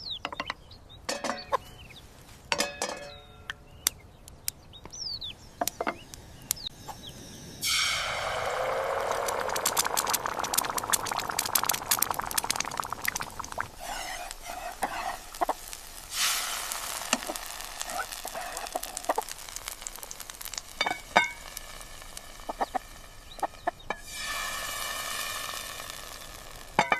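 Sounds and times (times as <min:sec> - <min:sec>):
egg sizzling in hot oil: 0:07.1 - 0:26.9
stirring in a pan: 0:08.6 - 0:21.3
hen clucking: 0:14.8 - 0:15.6, 0:22.5 - 0:23.9.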